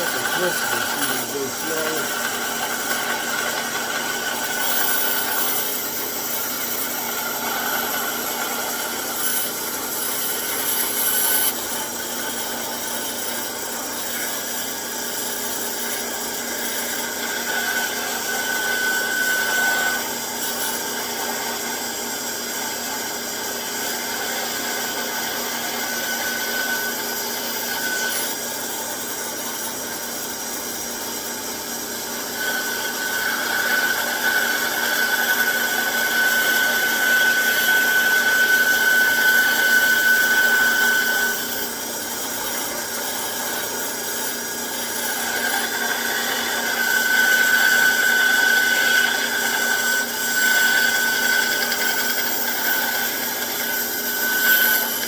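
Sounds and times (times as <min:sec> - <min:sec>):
band saw cutting wood: 0:00.0 - 0:55.0.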